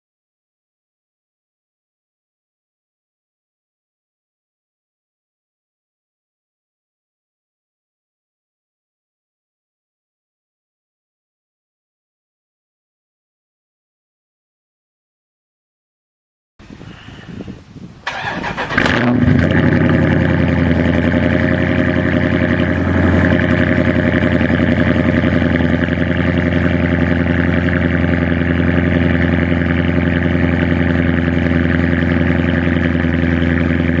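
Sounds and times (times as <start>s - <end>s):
engine cranking and starting: 18.0s - 24.3s.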